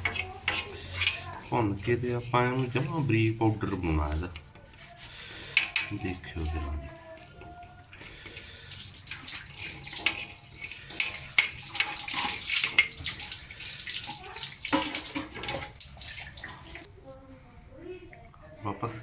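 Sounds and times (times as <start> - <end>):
spice sizzling and crackling: 8.0 - 16.8.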